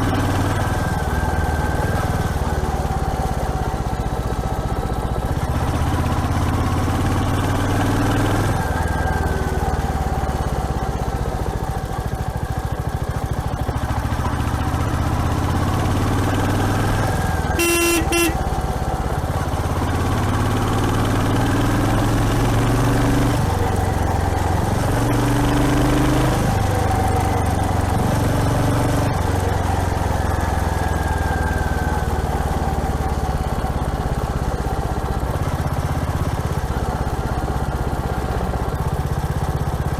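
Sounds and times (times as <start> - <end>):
motorcycle engine running: 0.0 - 39.9
horn honking: 17.3 - 18.8.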